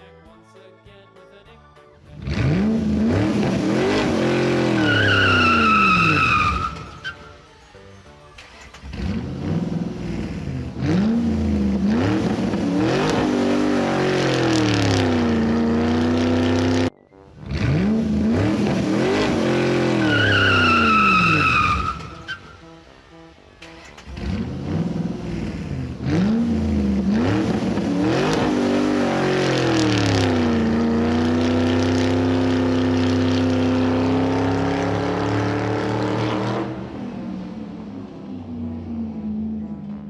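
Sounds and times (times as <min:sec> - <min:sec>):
car engine revving: 0:02.2 - 0:07.2, 0:08.4 - 0:40.0
high tyre squeal: 0:02.5 - 0:07.8, 0:17.4 - 0:24.9.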